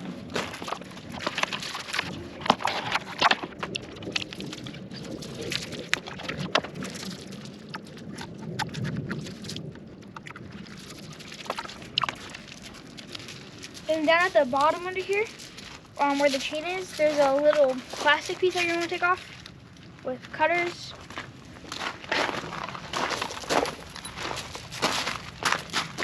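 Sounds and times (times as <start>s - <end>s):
packaging rustling and crinkling: 10.8s - 20.0s.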